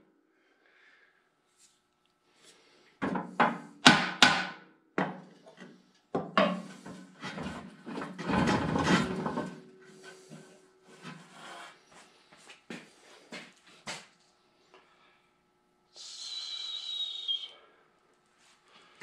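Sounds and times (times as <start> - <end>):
knocking and scraping: 3.0 - 3.6, 5.0 - 11.8.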